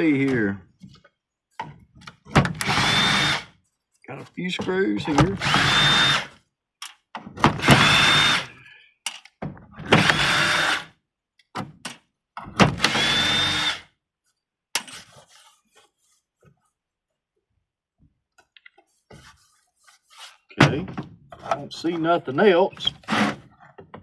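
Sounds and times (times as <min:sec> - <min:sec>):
power drill driving screws: 0:02.5 - 0:03.5, 0:05.1 - 0:06.4, 0:07.5 - 0:08.6, 0:09.9 - 0:10.9, 0:12.8 - 0:13.9
small clicks and knocks: 0:06.8 - 0:07.2, 0:09.0 - 0:09.6.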